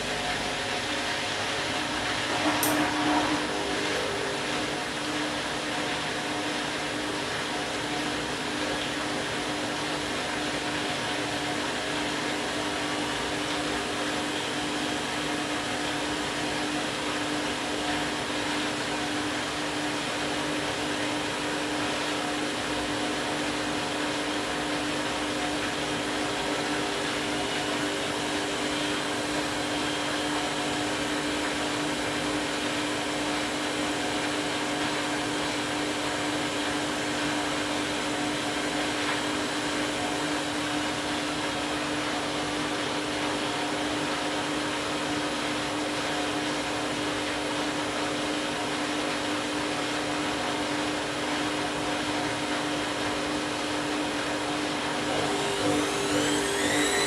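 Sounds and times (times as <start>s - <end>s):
washing machine motor whining: 0.0s - 44.2s, 51.7s - 57.0s.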